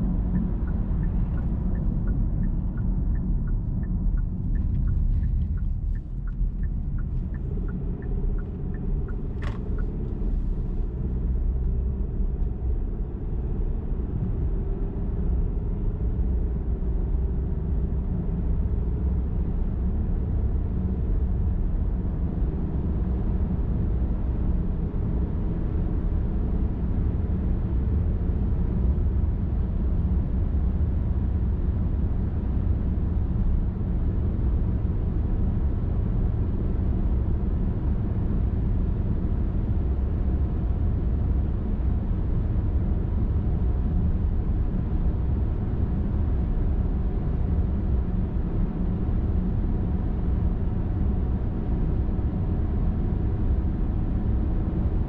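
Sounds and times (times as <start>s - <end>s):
car driving on highway: 0.0s - 55.0s
light regular ticking: 0.3s - 9.9s.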